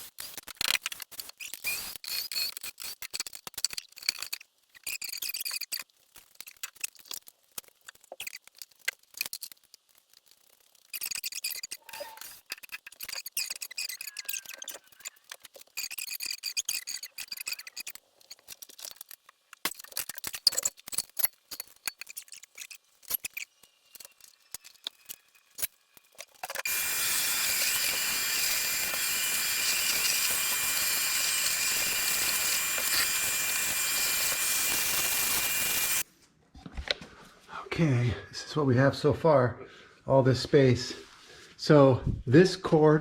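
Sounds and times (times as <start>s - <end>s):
electric motor whining: 26.7s - 36.0s.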